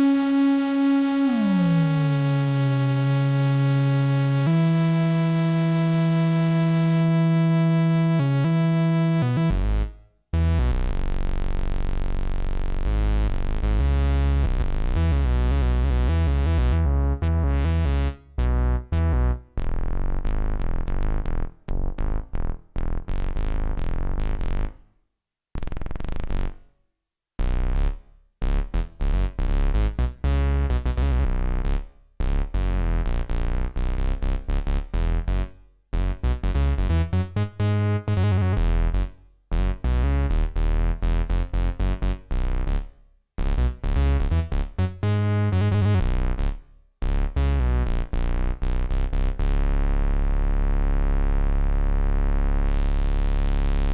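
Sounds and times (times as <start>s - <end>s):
synthesizer playing: 0.0s - 9.2s.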